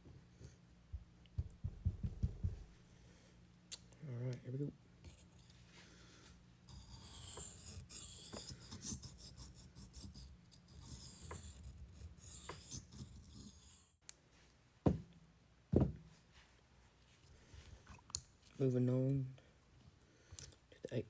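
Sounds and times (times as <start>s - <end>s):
blade scraping on whetstone: 6.7s - 13.9s.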